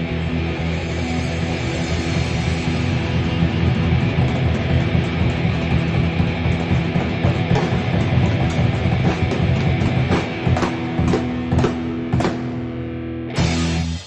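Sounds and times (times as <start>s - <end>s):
guitar chords: 0.0s - 14.0s
rock band playing: 0.0s - 14.0s
drum kit hits: 3.6s - 14.0s.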